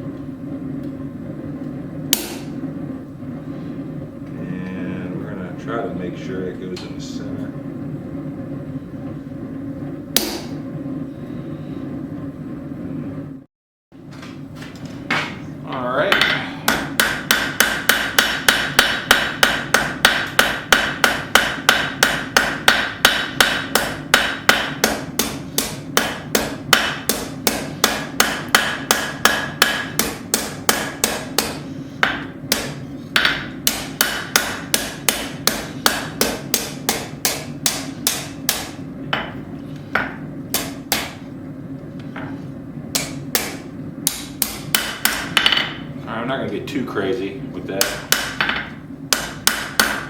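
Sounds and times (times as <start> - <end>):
hammer striking steel on anvil: 2.1 - 2.5, 10.2 - 10.6, 16.1 - 39.4, 40.0 - 41.2, 43.0 - 45.8, 47.8 - 50.0.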